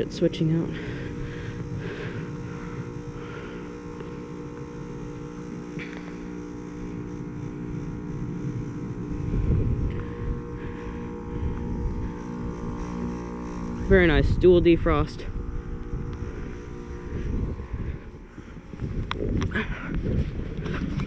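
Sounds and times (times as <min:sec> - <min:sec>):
heat pump humming: 0:00.0 - 0:21.0
low rumble: 0:07.1 - 0:21.0.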